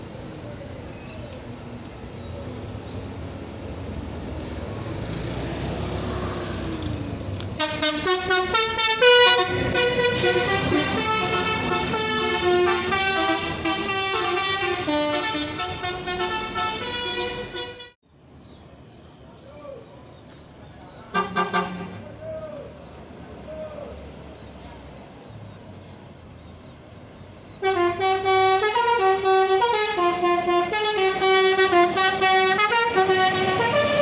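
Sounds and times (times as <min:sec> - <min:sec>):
bus engine: 0:00.0 - 0:34.0
multi-tone bus horn tune: 0:07.5 - 0:18.0, 0:21.1 - 0:22.1, 0:27.6 - 0:34.0.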